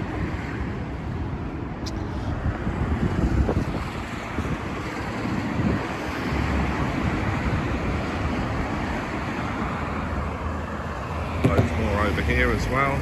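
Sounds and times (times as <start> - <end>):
wind buffeting microphone: 0.0 - 9.8.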